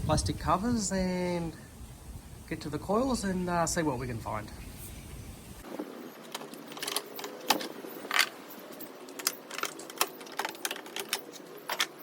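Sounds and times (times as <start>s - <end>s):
plastic covers clicking and snapping: 9.2s - 12.0s.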